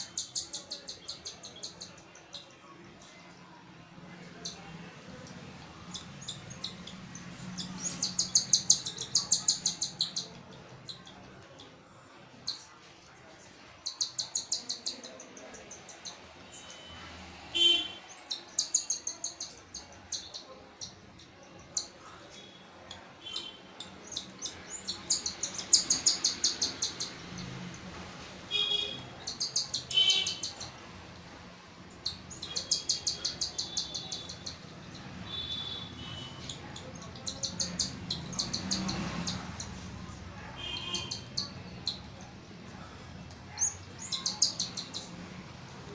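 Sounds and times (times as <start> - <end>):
cockatiel chicks chirping: 4.4 - 11.7, 22.9 - 27.8, 31.9 - 42.2.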